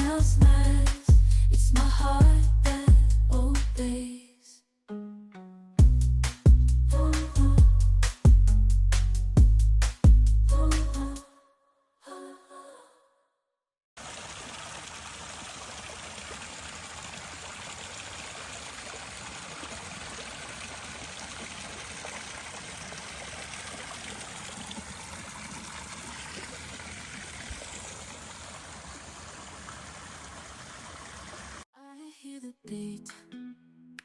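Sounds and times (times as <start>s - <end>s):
running water rushing: 14.0s - 31.6s.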